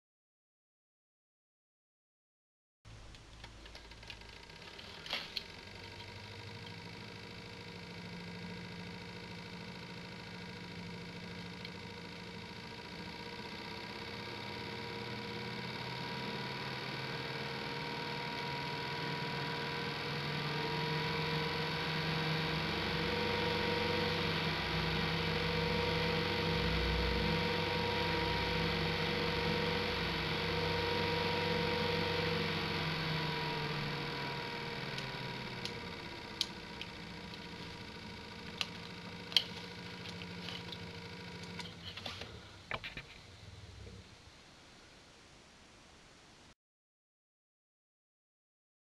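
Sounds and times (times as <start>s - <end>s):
computer fan running: 2.9s - 44.8s.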